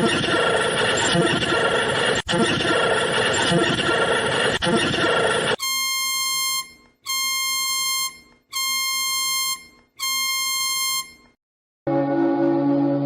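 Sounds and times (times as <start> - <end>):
buzzy emergency alert beeps: 5.6 - 11.3.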